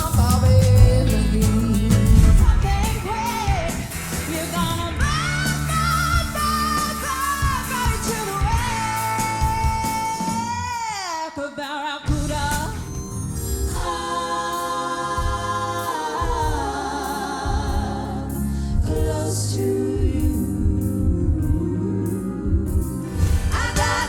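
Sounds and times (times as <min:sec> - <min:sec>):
band playing: 0:00.0 - 0:10.6
woman singing pop ballad: 0:00.0 - 0:12.9, 0:14.6 - 0:24.0.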